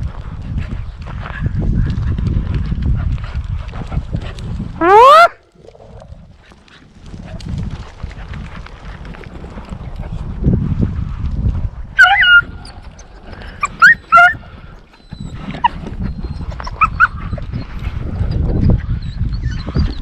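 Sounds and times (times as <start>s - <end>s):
dogs whining and yipping: 4.8s - 5.4s, 12.0s - 20.0s.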